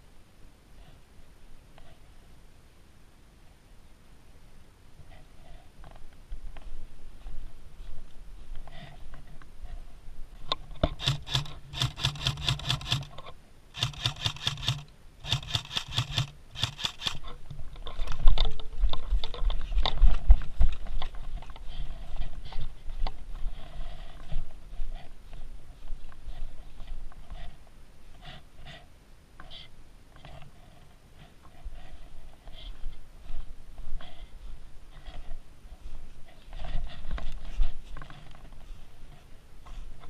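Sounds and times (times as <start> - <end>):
thumps and rubbing on microphone: 5.1 - 27.7, 30.2 - 40.0
airsoft gun rapid shots: 10.9 - 13.1, 13.8 - 17.2.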